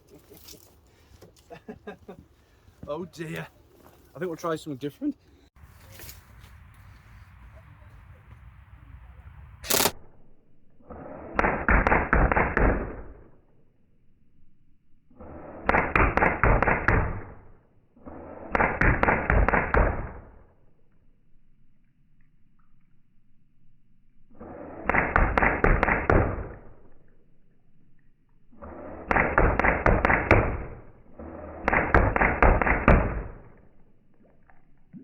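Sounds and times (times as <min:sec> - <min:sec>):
airsoft gun full-auto bursts: 0:09.6 - 0:10.0, 0:24.8 - 0:26.4, 0:29.0 - 0:30.8, 0:31.6 - 0:33.2.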